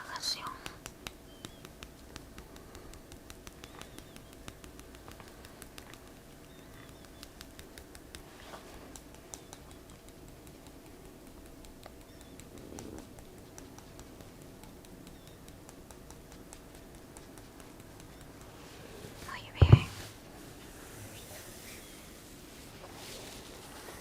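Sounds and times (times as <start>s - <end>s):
fingertips tapping on body: 0.0s - 20.1s
faint bird chirps: 1.2s - 1.7s, 3.6s - 4.5s, 6.3s - 7.4s, 12.0s - 12.5s, 15.1s - 15.6s.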